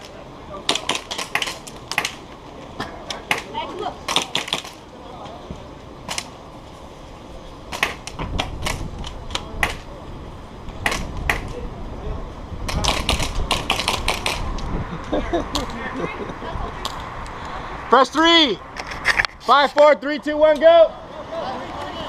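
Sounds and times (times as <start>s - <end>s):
airsoft guns firing: 0.7s - 2.2s, 3.3s - 4.8s, 12.7s - 14.4s.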